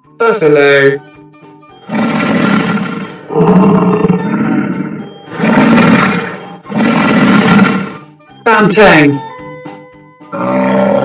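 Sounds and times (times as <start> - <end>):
buffalo bellowing: 1.8 - 8.1, 10.3 - 11.0.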